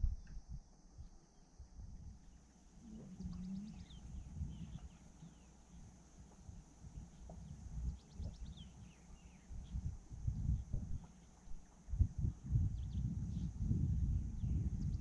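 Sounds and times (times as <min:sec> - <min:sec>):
steady high hiss: 0:00.2 - 0:15.0
bird chirps: 0:02.2 - 0:11.4.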